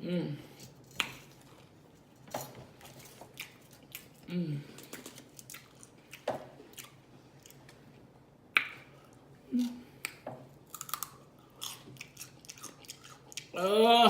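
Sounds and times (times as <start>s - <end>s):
person chewing and lip smacking: 5.0s - 7.8s, 8.6s - 13.6s.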